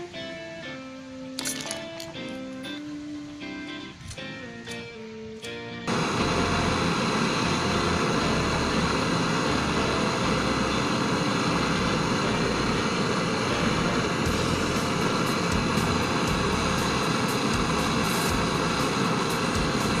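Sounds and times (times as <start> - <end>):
guitar music: 0.0 - 20.0
gas torch hissing: 5.9 - 20.0.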